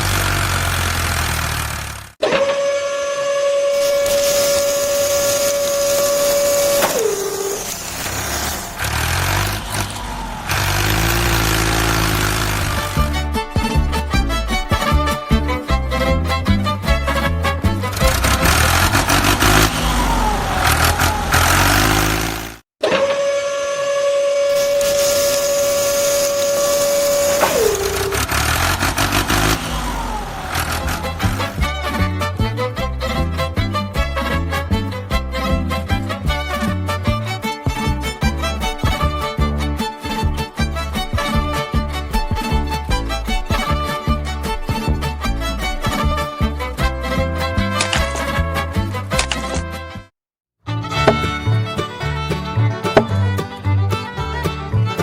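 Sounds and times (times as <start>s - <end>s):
vehicle engine rumbling with hiss: 0.0s - 2.2s, 3.9s - 13.2s, 17.9s - 22.6s, 24.5s - 31.9s
whistle-like tone sliding down: 2.2s - 8.5s, 22.8s - 31.3s
horn blast sagging in pitch: 2.2s - 13.2s, 16.6s - 32.6s.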